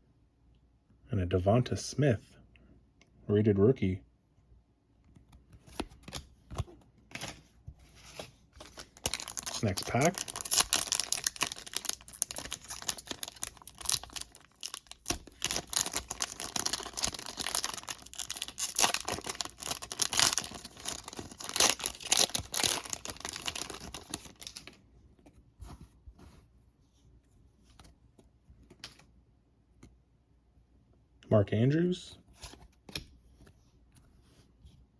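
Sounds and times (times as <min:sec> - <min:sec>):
foil wrapper crinkling and tearing: 0:08.6 - 0:24.7.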